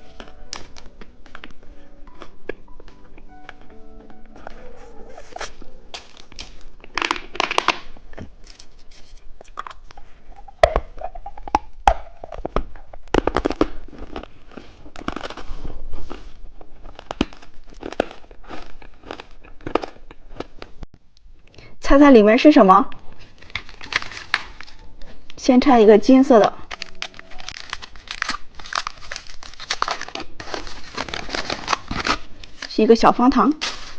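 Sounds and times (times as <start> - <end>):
plastic wrappers crinkling: 0.0 - 2.6, 4.4 - 20.1, 23.1 - 33.9
sharp clicks and cracks: 6.0 - 7.9.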